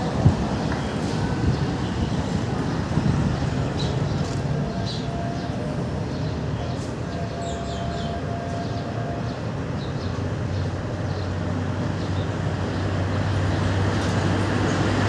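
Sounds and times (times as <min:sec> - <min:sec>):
low vehicle rumble: 0:00.0 - 0:15.0
sparrows chirping: 0:00.0 - 0:15.0.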